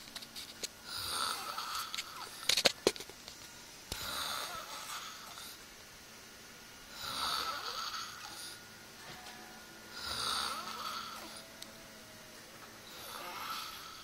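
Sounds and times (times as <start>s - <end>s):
man snoring: 0.8s - 2.4s, 4.0s - 5.6s, 6.9s - 8.6s, 9.9s - 11.5s, 12.8s - 14.0s.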